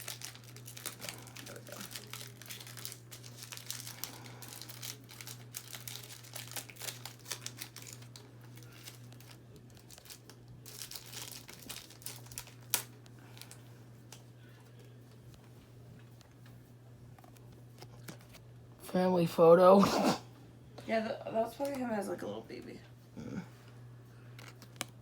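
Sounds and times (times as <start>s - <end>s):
wrapper crinkling: 0.0s - 13.6s.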